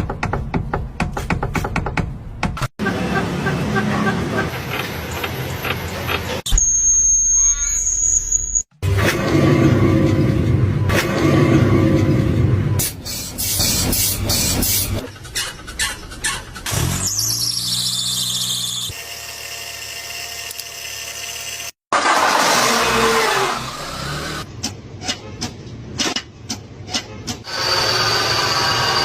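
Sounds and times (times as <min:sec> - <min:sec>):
high-pitched squeal: 0:06.5 - 0:08.7.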